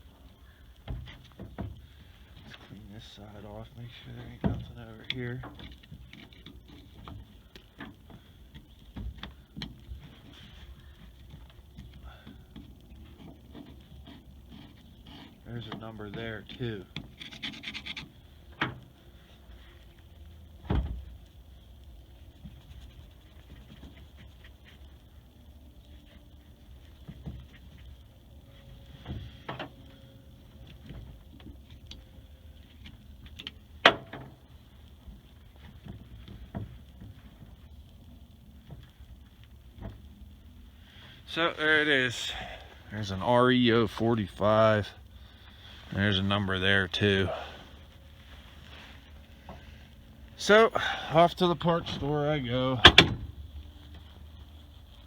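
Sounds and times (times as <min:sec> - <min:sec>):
small clicks and scrapes: 0:00.2 - 0:41.2.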